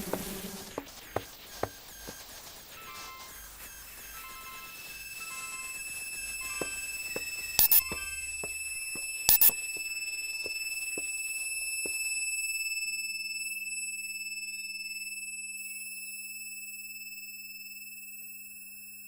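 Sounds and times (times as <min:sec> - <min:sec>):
faint regular ticks: 0:00.1 - 0:11.1
high-pitched electronic tone: 0:01.5 - 0:12.7
sharp double beep: 0:04.2 - 0:10.1.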